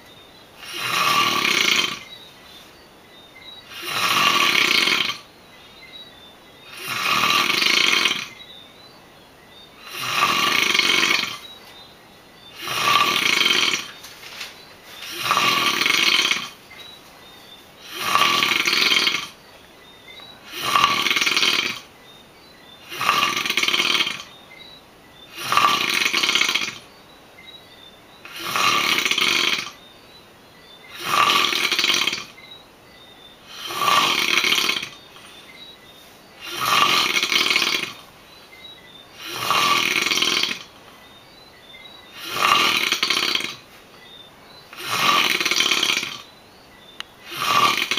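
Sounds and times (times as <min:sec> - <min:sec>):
person snoring: 0:00.6 - 0:02.1, 0:03.7 - 0:05.3, 0:06.7 - 0:08.4, 0:09.8 - 0:11.4, 0:12.6 - 0:14.0, 0:15.0 - 0:16.6, 0:17.8 - 0:19.4, 0:20.4 - 0:21.9, 0:22.8 - 0:24.3, 0:25.3 - 0:26.8, 0:28.3 - 0:29.8, 0:30.9 - 0:32.3, 0:33.4 - 0:35.0, 0:36.4 - 0:38.1, 0:39.2 - 0:40.7, 0:42.1 - 0:43.6, 0:44.7 - 0:46.3, 0:47.2 - 0:47.9
quiet breathing: 0:33.4 - 0:38.0.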